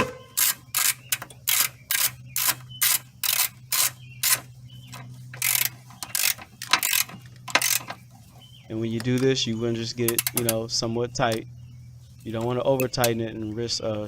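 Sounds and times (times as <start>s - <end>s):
ratchet wrench clicking: 0.3s - 8.0s, 10.0s - 10.6s.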